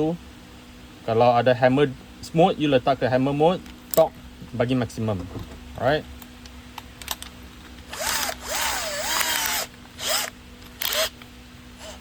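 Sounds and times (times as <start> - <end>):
cordless drill running: 7.9 - 11.2.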